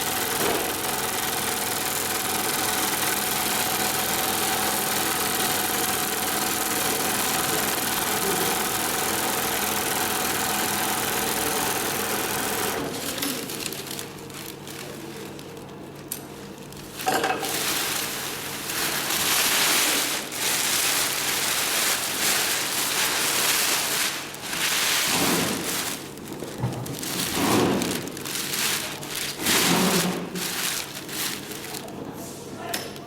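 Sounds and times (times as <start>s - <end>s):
faint sewing machine hum: 0.0s - 32.2s
sail cloth rustling and crinkling: 13.0s - 32.1s.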